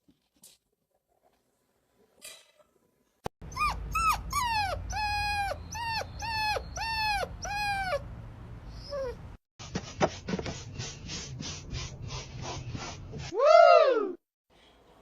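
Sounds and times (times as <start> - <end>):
dog whining: 3.5 - 8.1, 8.7 - 9.2.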